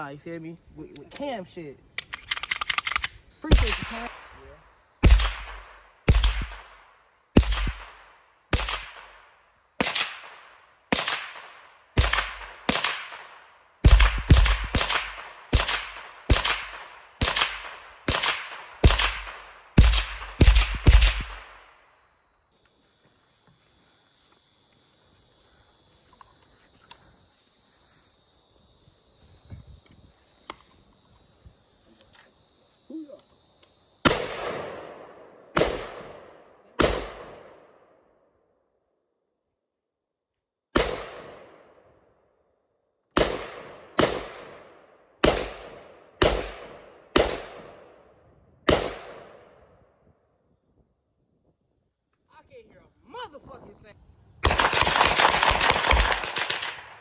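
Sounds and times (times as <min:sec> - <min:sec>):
steady high hiss: 0:00.0 - 0:38.8, 0:50.5 - 0:57.0
faint clicks: 0:01.9 - 0:03.2, 0:26.1 - 0:27.1
gunshot: 0:03.5 - 0:04.2, 0:05.0 - 0:06.8, 0:07.4 - 0:09.1, 0:11.0 - 0:21.6, 0:34.1 - 0:36.2, 0:36.8 - 0:37.5, 0:40.8 - 0:41.4, 0:43.2 - 0:44.6, 0:45.2 - 0:47.8, 0:48.7 - 0:49.4.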